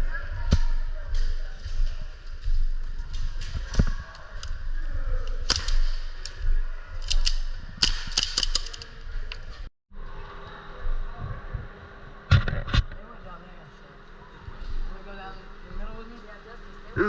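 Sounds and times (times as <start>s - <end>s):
airsoft guns firing: 5.4s - 6.0s, 7.0s - 8.8s.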